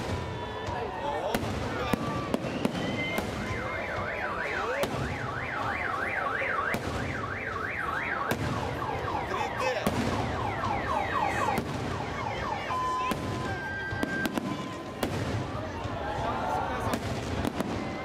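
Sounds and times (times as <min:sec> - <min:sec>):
fireworks bangs: 0:00.0 - 0:18.0
car alarm siren wailing: 0:01.9 - 0:15.0.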